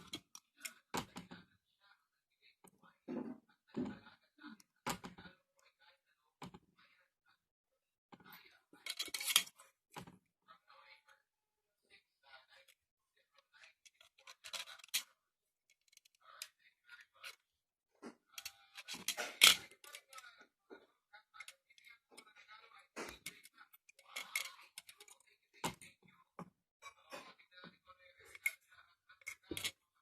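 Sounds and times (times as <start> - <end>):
small objects clicking and scraping: 8.8 - 9.6, 13.8 - 15.0.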